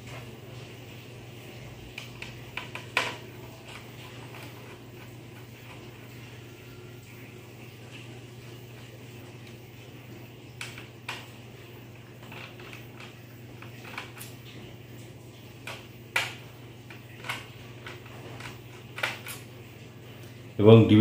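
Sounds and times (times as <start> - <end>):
low steady hum: 0.0 - 21.0
plastic laptop parts handled: 12.2 - 14.4, 15.6 - 19.4.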